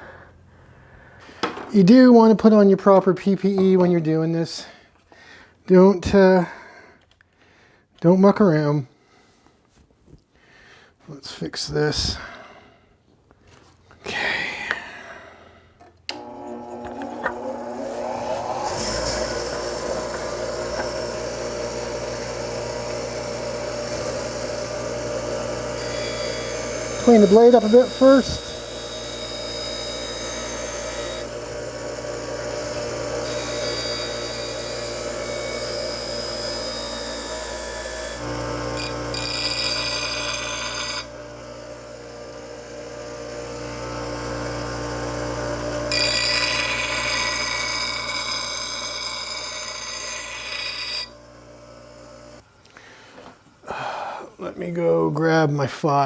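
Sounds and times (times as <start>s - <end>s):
angle grinder grinding steel: 16.1s - 52.4s.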